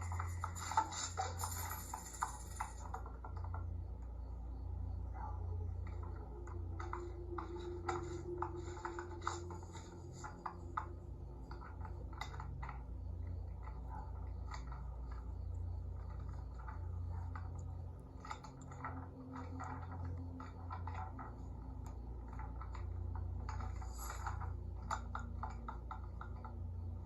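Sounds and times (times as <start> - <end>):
handling noise clicks and scratching: 0.0 - 3.7
steady low hum: 0.0 - 27.0.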